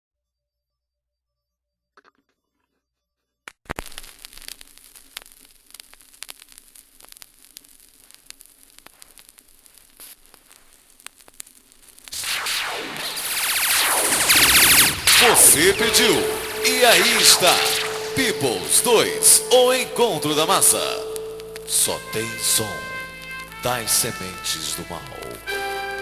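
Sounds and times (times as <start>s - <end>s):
vinyl hiss and crackle: 3.6s - 26.0s
music from record: 12.2s - 26.0s.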